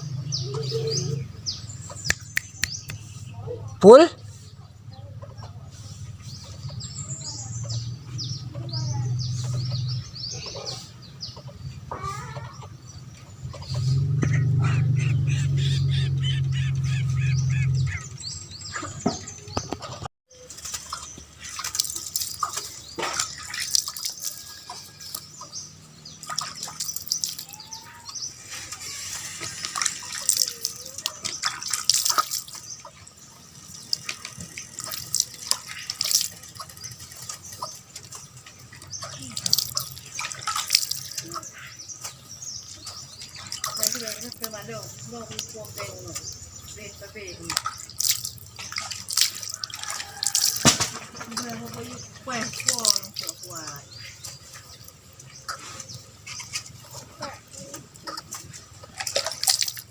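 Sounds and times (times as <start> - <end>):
birds chirping: 0.0 - 59.9
loud low hum: 13.4 - 19.6.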